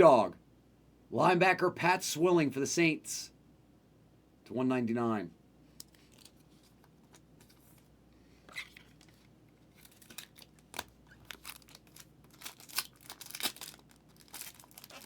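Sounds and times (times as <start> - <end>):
plastic packaging rustling: 8.5 - 15.0.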